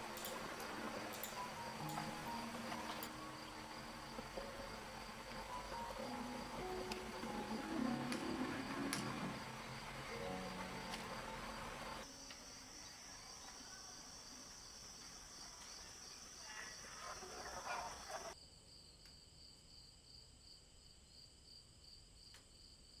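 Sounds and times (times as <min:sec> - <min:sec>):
faint clinks: 0:00.0 - 0:03.7
crickets chirping: 0:00.0 - 0:22.8.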